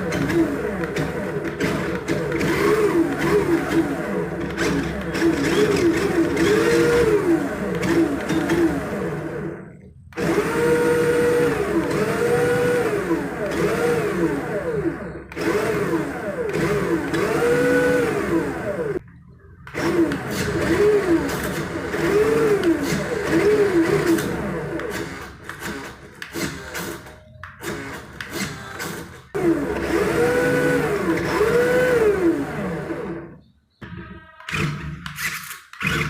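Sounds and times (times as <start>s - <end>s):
electric motor whining: 10.2s - 19.0s, 29.4s - 33.3s.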